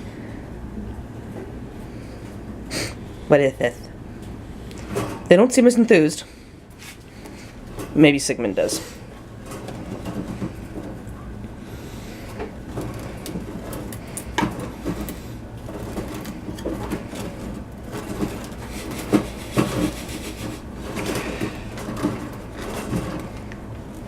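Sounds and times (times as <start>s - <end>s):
steady low hum: 0.0s - 24.0s
rats crunching on cracker: 11.6s - 24.0s.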